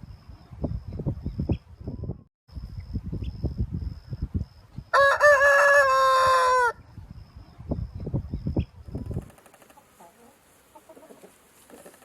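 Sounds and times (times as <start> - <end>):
rooster crowing: 4.9 - 6.8.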